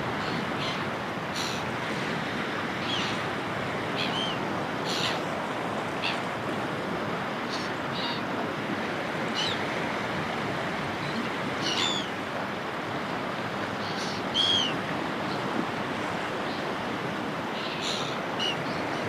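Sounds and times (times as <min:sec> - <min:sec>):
sea waves breaking on shore: 0:00.0 - 0:19.0
seagulls calling: 0:00.1 - 0:01.7, 0:02.8 - 0:03.3, 0:03.9 - 0:05.3, 0:11.0 - 0:12.1, 0:13.8 - 0:14.8.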